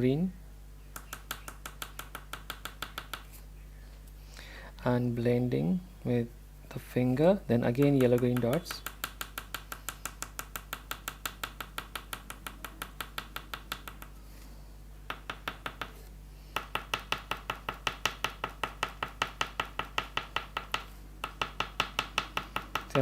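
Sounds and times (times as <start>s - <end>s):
oil pastel tapping on paper: 0.9s - 3.3s, 7.8s - 14.2s, 15.1s - 23.0s.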